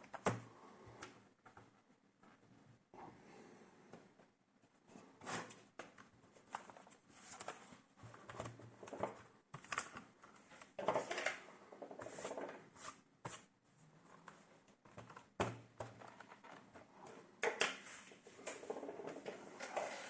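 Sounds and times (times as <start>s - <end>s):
hands handling laptop parts: 5.2s - 11.4s, 12.0s - 18.6s.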